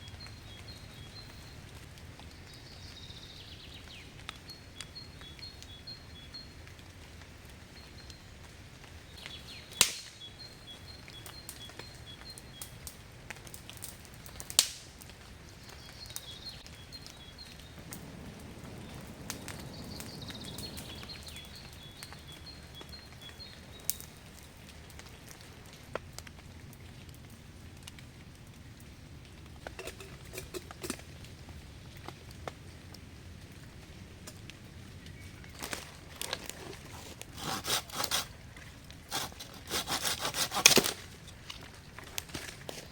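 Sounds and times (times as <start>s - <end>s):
bird chirping: 0.0s - 1.6s, 9.1s - 12.7s, 19.4s - 24.0s.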